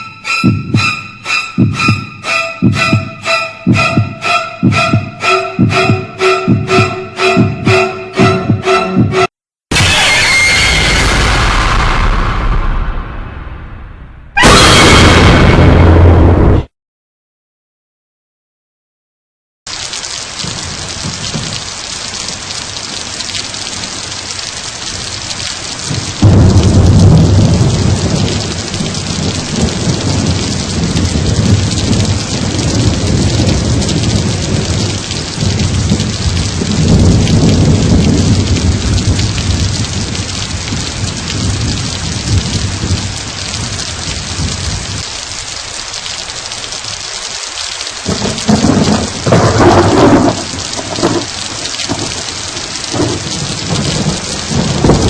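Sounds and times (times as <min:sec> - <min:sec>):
rain hiss: 0:19.7 - 0:55.0
deep thunder rumble: 0:20.3 - 0:46.3, 0:48.0 - 0:55.0.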